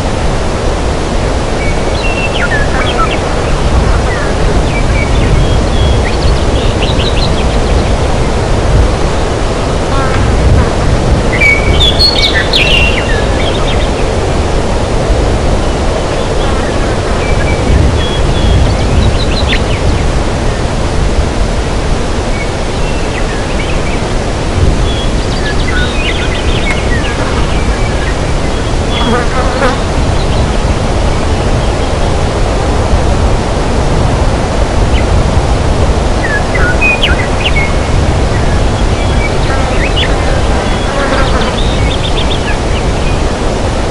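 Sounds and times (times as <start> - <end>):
loud rushing noise: 0.0 - 43.9
bird chirps: 11.3 - 14.0.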